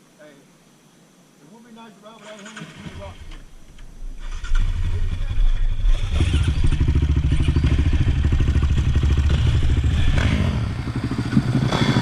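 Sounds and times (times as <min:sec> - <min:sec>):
motorbike engine running: 0:05.8 - 0:12.0.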